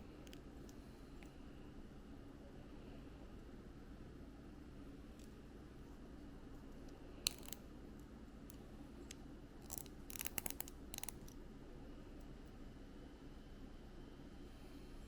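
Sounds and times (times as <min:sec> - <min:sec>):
faint low hum: 0:00.0 - 0:15.0
plastic block pieces clicking: 0:07.3 - 0:07.6, 0:09.6 - 0:11.3.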